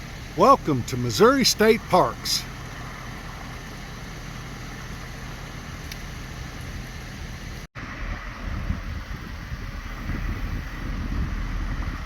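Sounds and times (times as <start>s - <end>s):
vehicle noise: 0.0s - 12.0s
wind on microphone: 7.8s - 12.0s.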